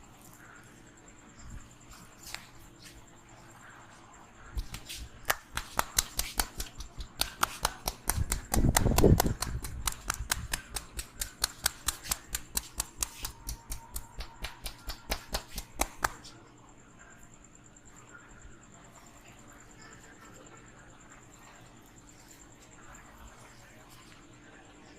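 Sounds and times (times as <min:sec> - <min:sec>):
hands slapping a head: 0:04.6 - 0:16.3.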